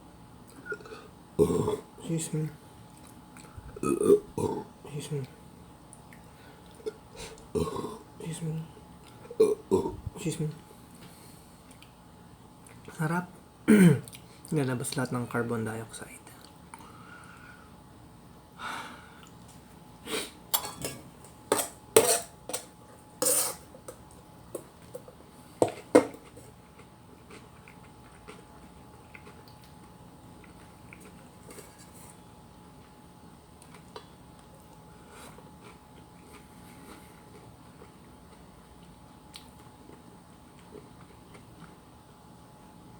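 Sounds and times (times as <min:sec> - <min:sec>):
metal spoon clinking on pot: 0:20.6 - 0:22.3.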